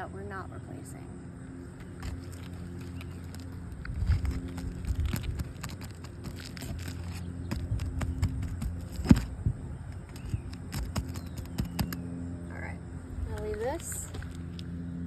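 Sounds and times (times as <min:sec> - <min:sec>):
steady low hum: 0:00.0 - 0:15.0
shingle snapping: 0:01.8 - 0:12.0
shingles scraping and crackling: 0:01.8 - 0:12.0.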